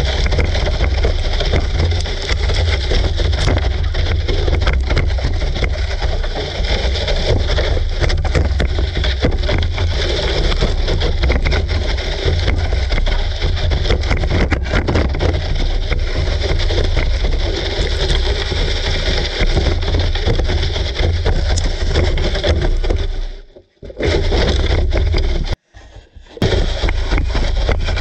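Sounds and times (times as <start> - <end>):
rattling knocks from bumps: 0.0 - 25.6.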